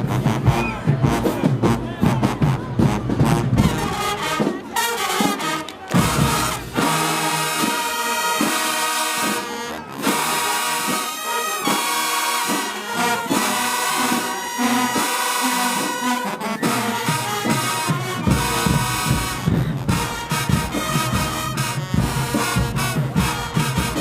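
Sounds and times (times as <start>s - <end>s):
brass section playing chords: 0.0s - 24.0s
heavy drums: 0.0s - 24.0s.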